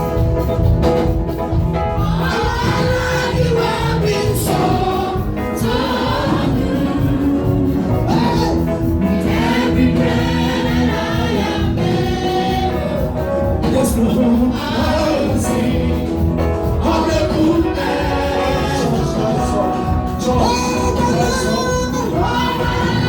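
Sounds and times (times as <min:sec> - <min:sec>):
band with steady beat: 0:00.0 - 0:23.0
choir singing: 0:01.9 - 0:23.0.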